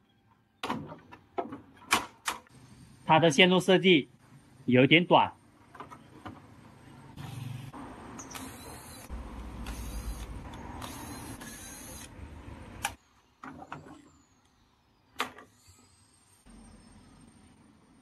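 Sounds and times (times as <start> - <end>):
sharp clicks: 8.2 - 12.2.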